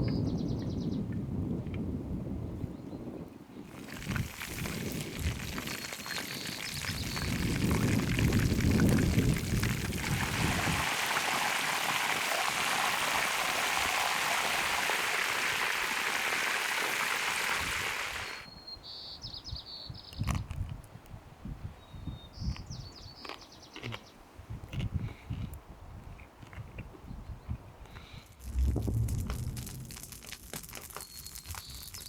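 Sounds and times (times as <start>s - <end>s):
hot oil sizzling: 3.7s - 18.4s, 28.3s - 32.0s
clicks and crackles: 27.9s - 32.0s.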